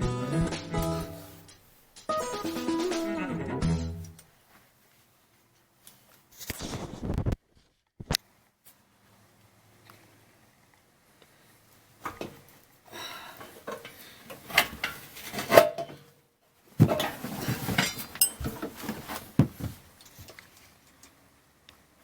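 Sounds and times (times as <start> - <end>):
metal tools clanking: 16.8 - 18.8.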